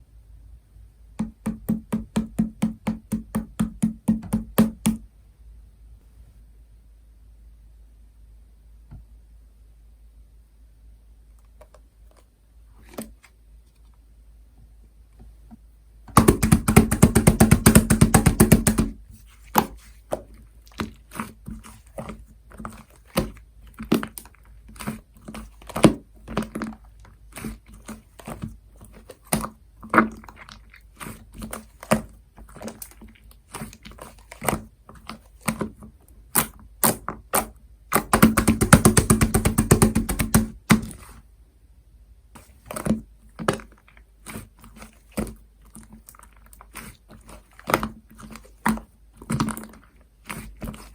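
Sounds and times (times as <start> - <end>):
sticky slime clicking and popping: 33.6 - 41.0.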